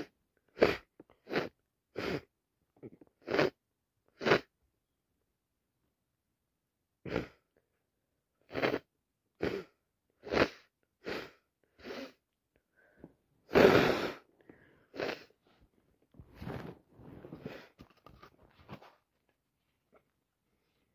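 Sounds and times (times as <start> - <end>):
person sneezing: 13.5 - 14.3.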